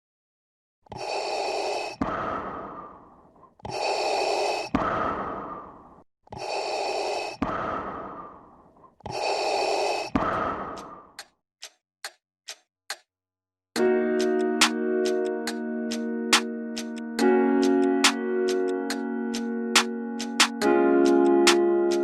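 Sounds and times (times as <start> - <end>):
breath-like sound effect: 0.9 - 11.2.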